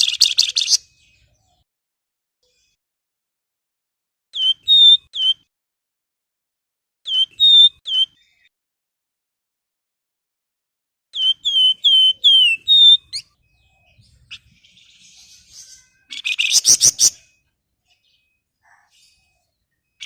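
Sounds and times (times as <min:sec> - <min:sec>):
bird whistling notes: 0:04.4 - 0:05.5, 0:07.1 - 0:08.5, 0:11.2 - 0:17.4.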